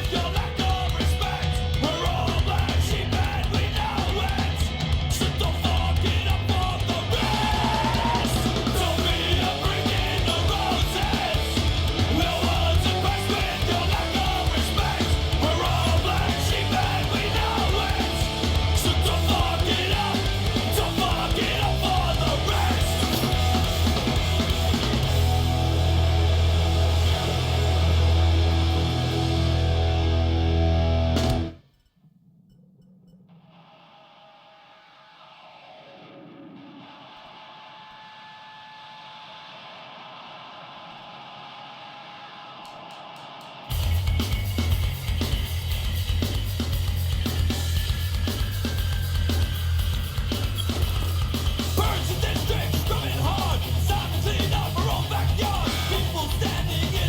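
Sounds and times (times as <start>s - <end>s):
shouted vocals: 0.0s - 24.8s, 51.6s - 57.0s
bass guitar: 0.0s - 31.6s, 43.7s - 57.0s
heavy rock music: 0.0s - 31.7s, 33.4s - 57.0s
distorted guitar: 0.0s - 31.8s, 32.8s - 57.0s.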